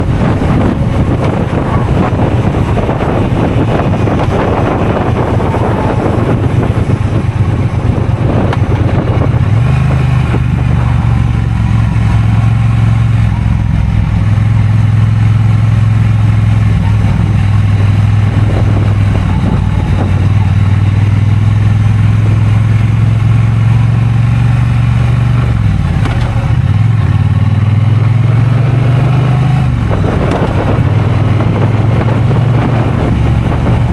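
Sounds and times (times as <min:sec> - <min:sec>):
motorcycle engine running: 0:00.0 - 0:33.9
wind rushing over microphone: 0:00.0 - 0:33.9.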